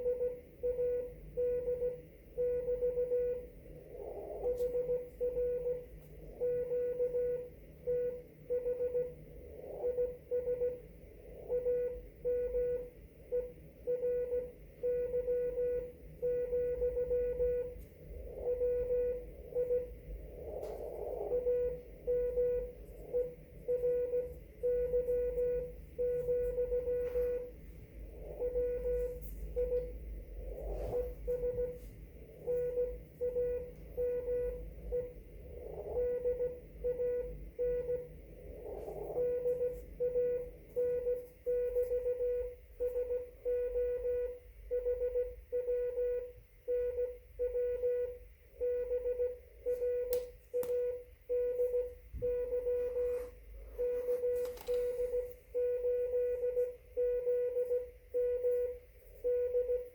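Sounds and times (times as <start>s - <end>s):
morse code tone: 0.0s - 59.9s
faint static clicks: 49.6s - 50.9s.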